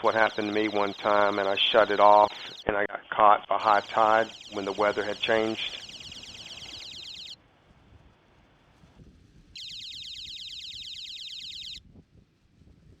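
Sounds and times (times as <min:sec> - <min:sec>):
electronic alarm buzzer warbling: 0:00.0 - 0:02.7, 0:03.6 - 0:07.4, 0:09.6 - 0:11.8.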